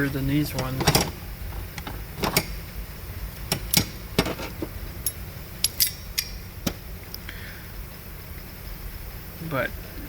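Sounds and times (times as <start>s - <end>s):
pliers clicking metal on metal: 5.6s - 6.4s.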